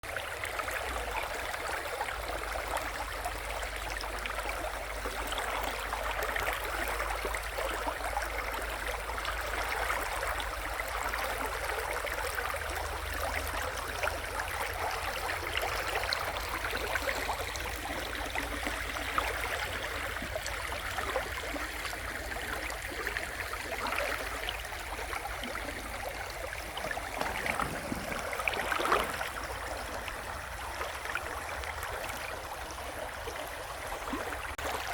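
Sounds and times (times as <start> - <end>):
river water flowing: 0.1 - 34.9.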